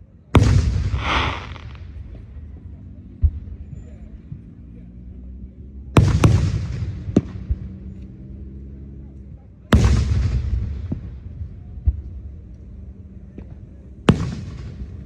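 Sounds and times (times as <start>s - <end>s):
fireworks sharp cracks: 0.4s - 2.4s
fireworks booming: 0.4s - 2.6s, 14.1s - 15.0s.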